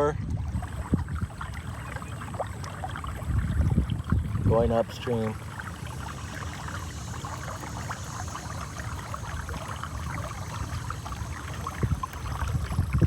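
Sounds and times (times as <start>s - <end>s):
water splashing along hull: 0.0s - 13.0s
wind rumble on microphone: 0.0s - 13.0s.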